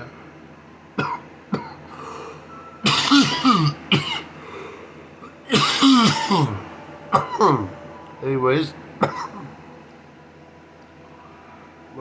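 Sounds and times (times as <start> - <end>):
man coughing hard: 1.0 - 2.2, 2.8 - 4.4, 5.2 - 7.7, 9.0 - 9.5.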